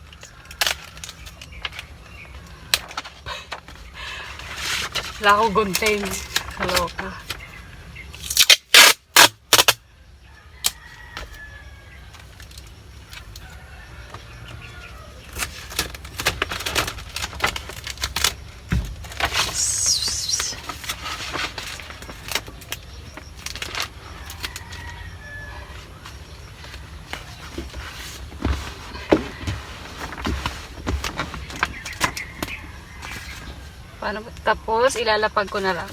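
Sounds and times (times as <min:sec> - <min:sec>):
high hiss: 0:19.4 - 0:20.6
cardboard sign rustling: 0:23.5 - 0:33.7.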